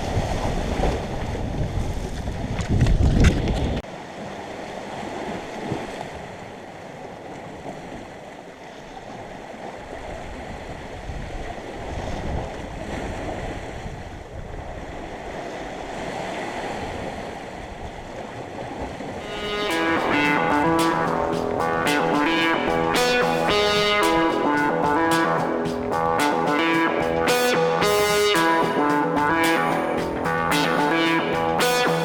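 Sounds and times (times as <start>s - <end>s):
wind gusting on microphone: 0.0s - 3.8s, 10.3s - 15.1s
sea waves washing ashore: 3.9s - 31.9s.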